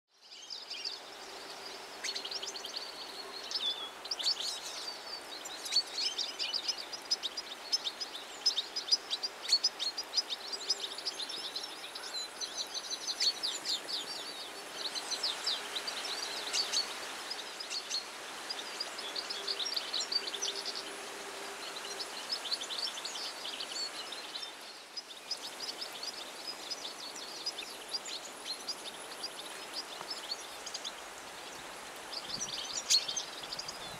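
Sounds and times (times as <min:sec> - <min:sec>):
background hiss: 0:00.2 - 0:33.9
bird twittering and trilling: 0:32.1 - 0:33.9.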